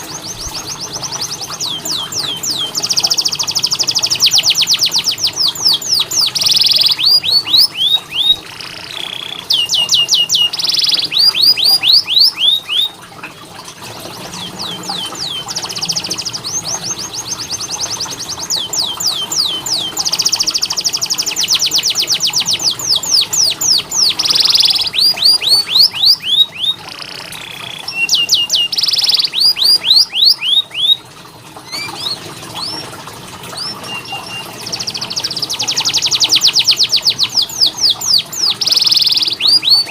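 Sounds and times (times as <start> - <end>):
canary singing trills: 0.0 - 13.1, 13.9 - 31.0, 31.6 - 39.9.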